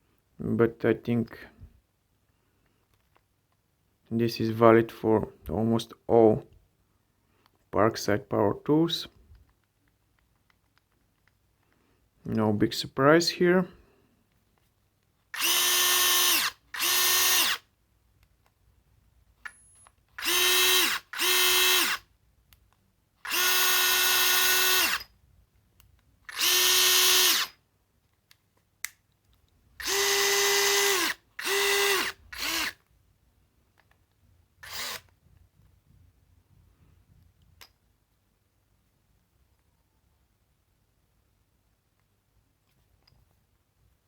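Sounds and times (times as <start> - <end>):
cordless drill motor whining: 15.4 - 17.6, 20.2 - 22.0, 23.3 - 25.1, 26.3 - 27.5, 29.8 - 32.8, 34.6 - 35.1.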